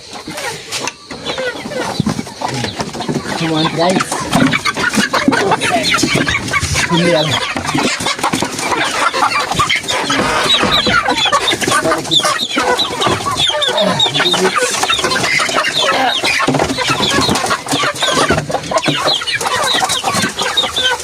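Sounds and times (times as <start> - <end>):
chickens clucking: 0.0 - 21.0.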